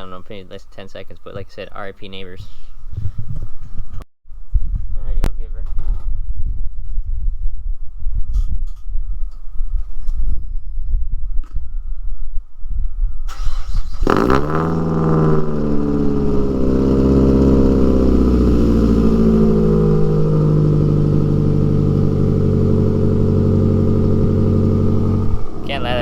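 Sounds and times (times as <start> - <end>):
car engine starting and idling: 13.2 - 26.0.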